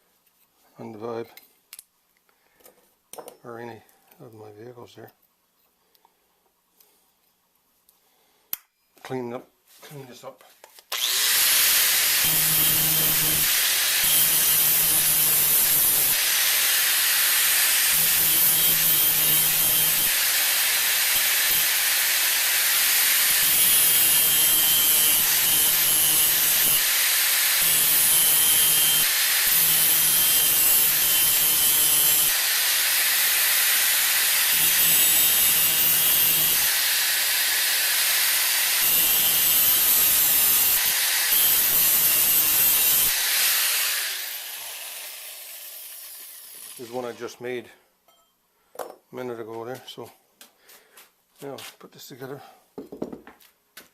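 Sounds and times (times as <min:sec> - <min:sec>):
grinder hissing on metal: 0:10.9 - 0:47.4.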